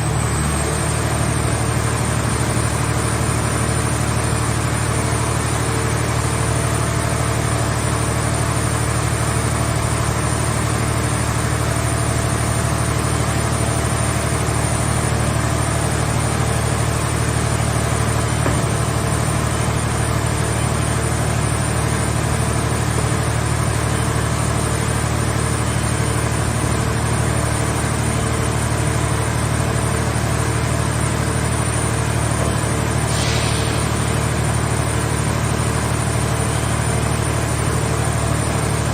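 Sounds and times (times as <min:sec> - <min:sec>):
brief hiss: 0:33.1 - 0:34.1.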